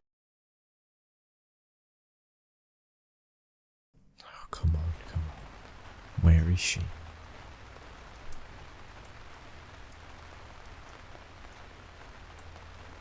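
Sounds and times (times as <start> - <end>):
steady rain falling: 4.2 - 13.0.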